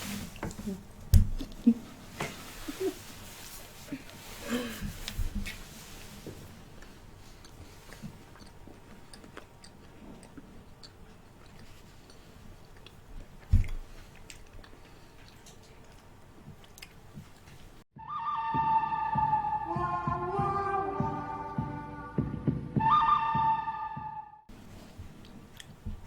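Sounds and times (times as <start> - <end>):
chewing wafer bar: 6.7 - 17.8, 24.8 - 26.0
mouth noises and clicks: 6.8 - 17.8, 25.0 - 26.0
music: 18.0 - 24.4.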